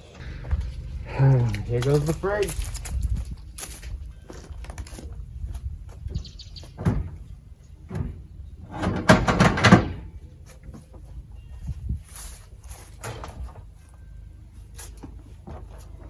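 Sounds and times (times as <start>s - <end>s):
knocks and bumps: 0.2s - 12.0s.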